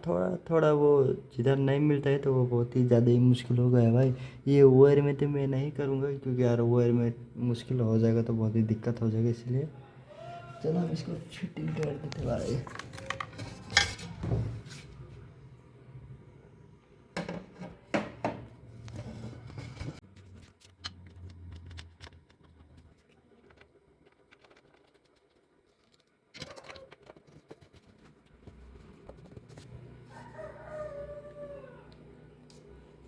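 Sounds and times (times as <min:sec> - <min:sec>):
chicken calling: 0:30.1 - 0:32.0.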